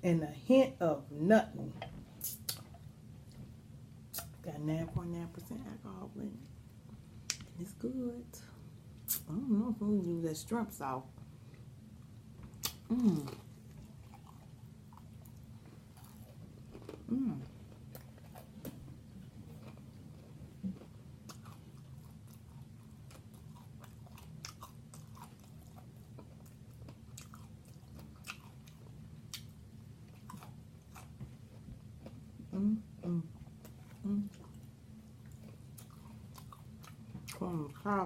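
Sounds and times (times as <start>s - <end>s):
person chewing food: 11.5s - 37.4s
wet mouth clicks and smacks: 12.6s - 12.8s.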